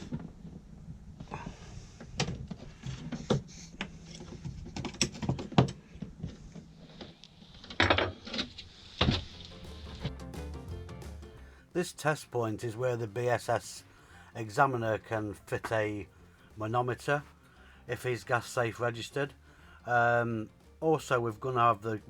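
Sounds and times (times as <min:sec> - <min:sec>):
clicks and knocks of pipe fittings: 0:02.0 - 0:09.3.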